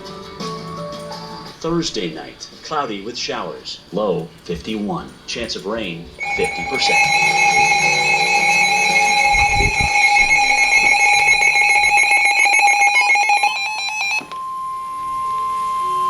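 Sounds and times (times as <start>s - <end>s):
buzzy electronic alarm: 6.2s - 16.0s
steady pure warning tone: 6.2s - 16.0s.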